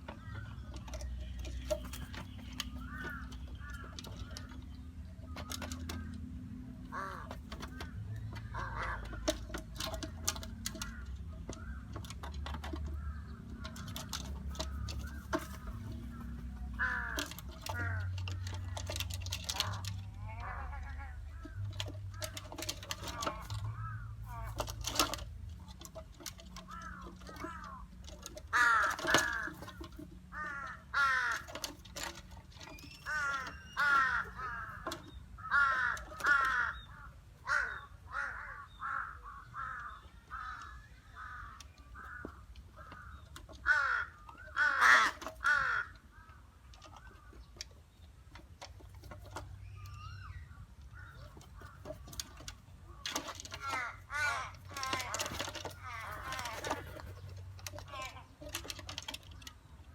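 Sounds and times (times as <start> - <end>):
crows cawing: 2.0 - 4.6, 6.8 - 25.2, 25.8 - 47.3, 49.7 - 57.1.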